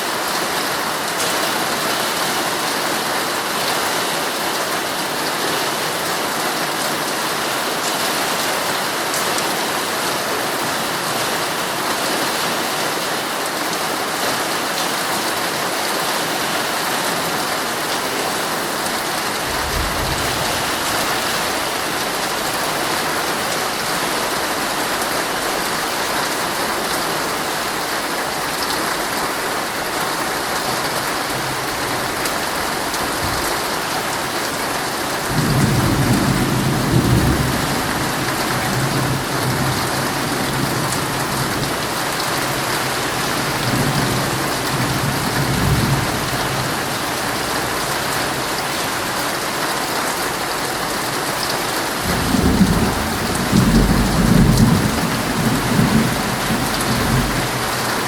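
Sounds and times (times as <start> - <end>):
heavy rain drumming on a tent: 0.0 - 58.0
thunder rumbling: 19.3 - 23.7, 52.0 - 58.0.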